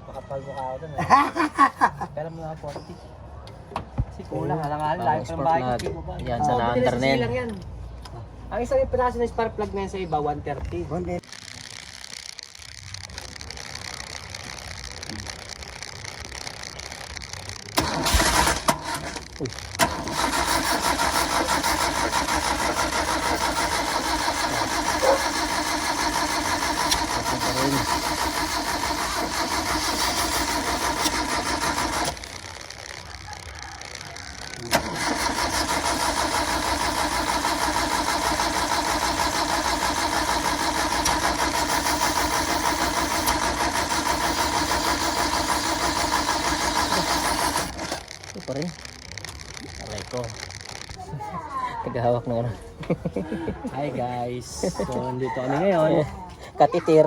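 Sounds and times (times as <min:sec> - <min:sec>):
engine cranking and running: 0:11.0 - 0:51.7.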